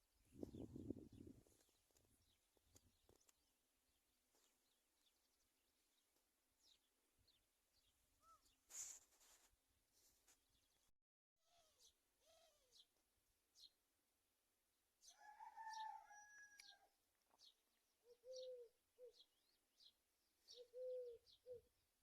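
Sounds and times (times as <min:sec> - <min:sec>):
small birds chirping: 0:00.3 - 0:13.8, 0:16.6 - 0:21.8
dove cooing: 0:11.5 - 0:12.8, 0:18.0 - 0:19.2, 0:20.5 - 0:21.7
rooster crowing: 0:15.0 - 0:16.9.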